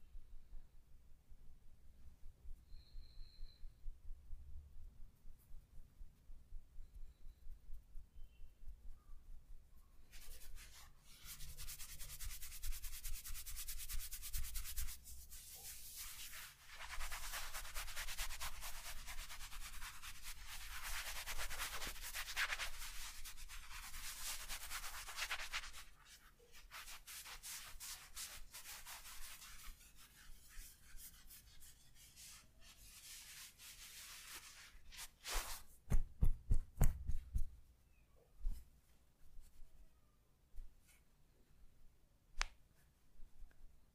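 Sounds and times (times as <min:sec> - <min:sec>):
hands rubbing skin: 0:10.1 - 0:37.6
sharp massage taps: 0:35.9 - 0:37.6.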